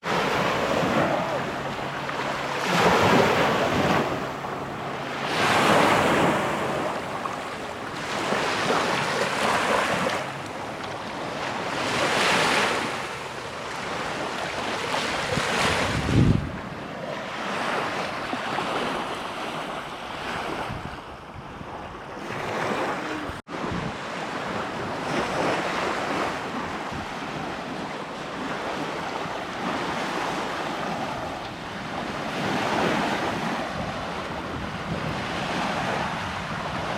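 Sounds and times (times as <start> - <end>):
small waves washing on sand: 0.0 - 36.9
wind on microphone: 13.8 - 36.9.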